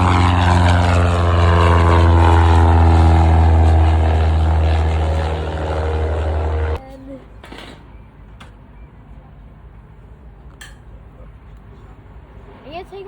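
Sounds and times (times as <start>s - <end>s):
propeller airplane engine drone: 0.0s - 8.6s.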